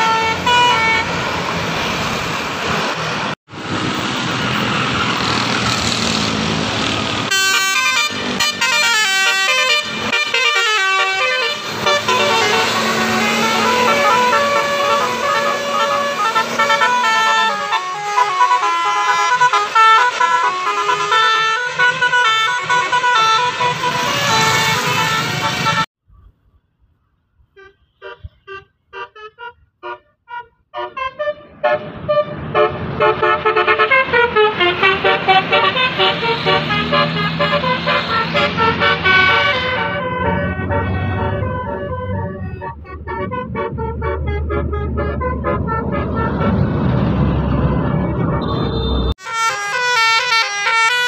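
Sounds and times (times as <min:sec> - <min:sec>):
multi-tone bus horn melodies: 0:00.0 - 0:01.4, 0:07.2 - 0:25.9, 0:27.5 - 0:51.0
soft horn toots: 0:27.5 - 0:46.3, 0:48.4 - 0:50.4.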